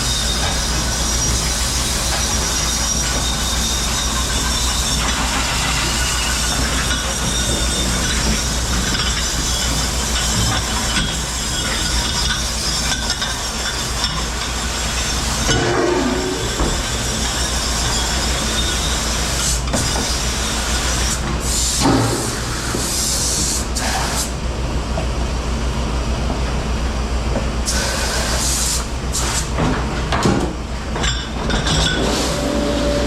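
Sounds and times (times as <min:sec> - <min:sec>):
low machine hum: 0:15.4 - 0:18.7.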